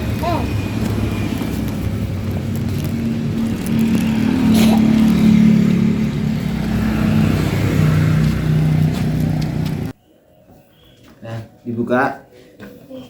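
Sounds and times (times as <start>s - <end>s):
vehicle engine and road noise: 0.0s - 10.0s.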